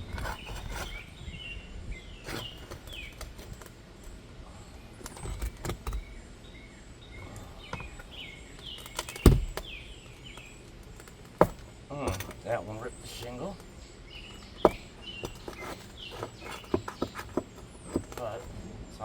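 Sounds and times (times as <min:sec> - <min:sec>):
small birds chirping: 0:00.0 - 0:19.0
hammer prying nails and shingles: 0:02.2 - 0:04.2, 0:05.0 - 0:06.2, 0:07.7 - 0:18.5
heavy thump: 0:09.2 - 0:09.7.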